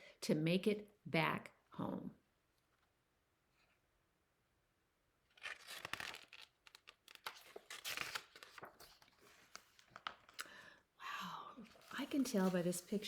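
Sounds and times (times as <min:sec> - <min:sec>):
paper pages rustling and turning: 0:05.3 - 0:10.6, 0:11.6 - 0:13.0.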